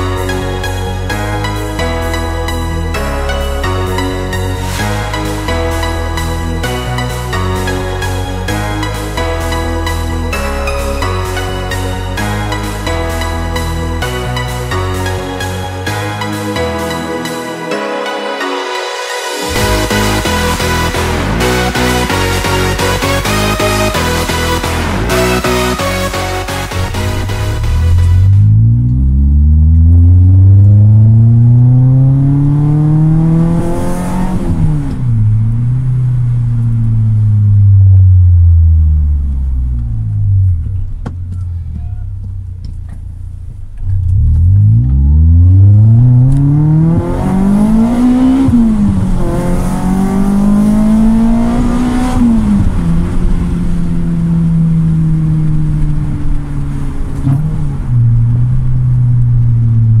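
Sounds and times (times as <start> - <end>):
car engine accelerating: 19.4 - 60.0.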